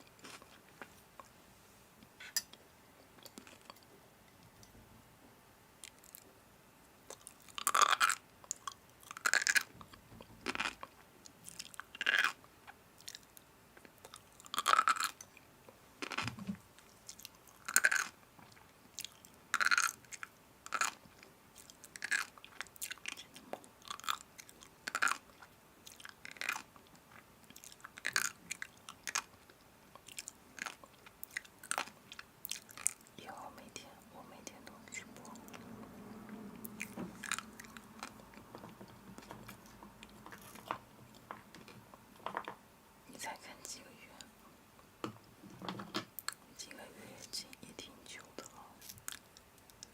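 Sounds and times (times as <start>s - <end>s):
crunchy food chewing: 7.1s - 15.4s, 16.0s - 33.1s, 36.6s - 42.5s.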